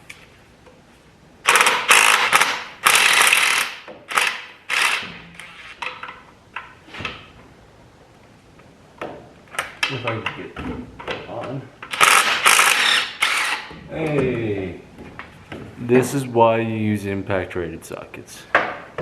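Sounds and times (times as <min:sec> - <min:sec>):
ratchet wrench clicking: 0:01.5 - 0:05.0.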